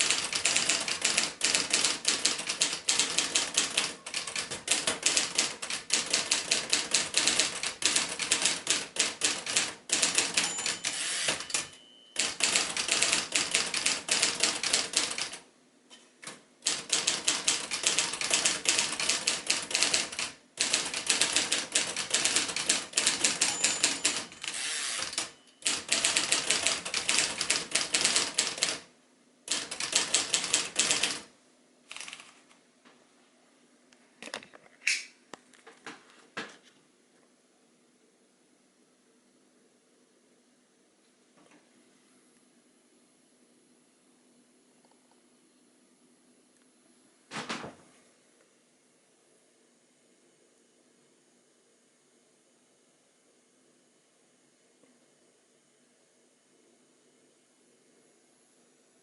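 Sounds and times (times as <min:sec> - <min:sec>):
typewriter keystroke clacks: 0:00.0 - 0:15.4, 0:16.2 - 0:28.9, 0:29.5 - 0:31.3.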